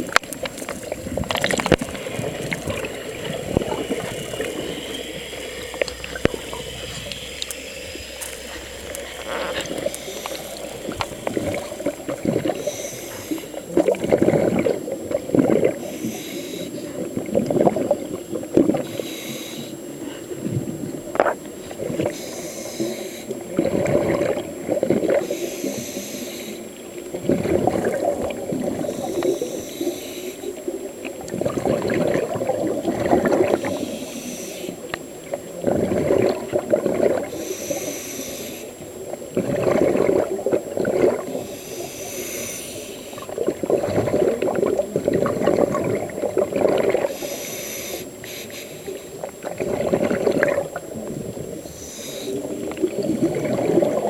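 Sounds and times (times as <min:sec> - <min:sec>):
exhaled bubbles gushing: 0:00.0 - 0:19.1, 0:19.8 - 0:38.0, 0:38.7 - 0:54.0
scuba regulator inhale hiss: 0:03.9 - 0:11.8, 0:12.4 - 0:13.6, 0:15.8 - 0:16.8, 0:18.8 - 0:20.4, 0:22.1 - 0:23.4, 0:25.2 - 0:26.8, 0:28.8 - 0:30.6, 0:33.5 - 0:34.8, 0:37.3 - 0:38.8, 0:41.3 - 0:43.3, 0:47.0 - 0:49.1, 0:51.6 - 0:52.7.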